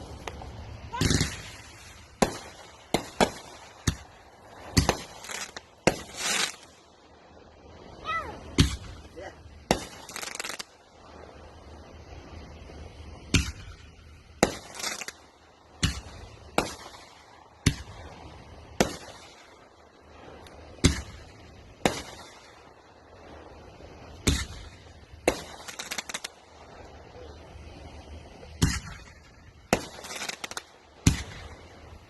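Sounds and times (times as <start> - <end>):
firework bangs: 0.0 - 6.8, 8.4 - 10.8, 13.2 - 19.6, 20.3 - 23.1, 24.1 - 26.4, 28.5 - 32.0
firework crackling hiss: 0.0 - 32.0.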